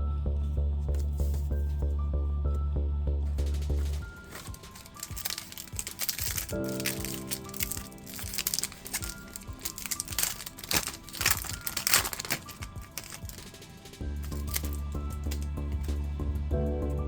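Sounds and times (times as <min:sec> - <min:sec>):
background music: 0:00.0 - 0:17.0
foil wrapper crinkling: 0:03.3 - 0:15.9.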